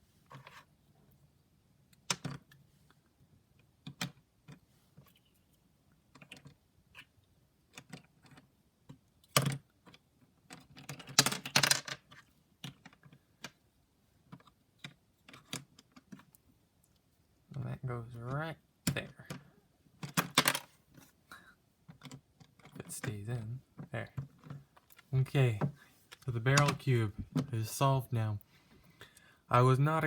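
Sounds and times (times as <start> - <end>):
plastic puzzle pieces clicking: 6.1 - 7.1, 7.7 - 13.6, 14.2 - 16.3, 20.0 - 20.7.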